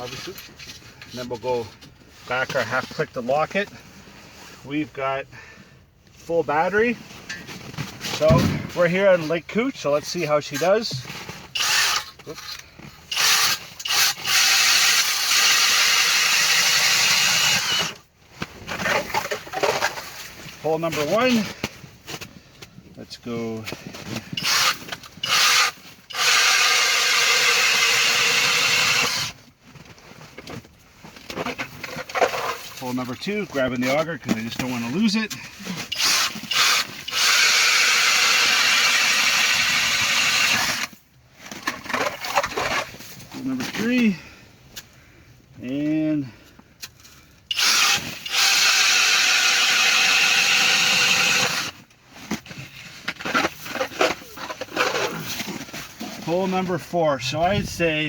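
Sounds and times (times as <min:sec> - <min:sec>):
cordless drill boring into ice: 0:11.5 - 0:18.1, 0:24.4 - 0:29.4, 0:35.8 - 0:41.0, 0:47.5 - 0:52.5, 0:53.1 - 0:55.4
auger scraping ice shavings: 0:18.6 - 0:21.6, 0:31.2 - 0:44.3, 0:47.5 - 0:58.0.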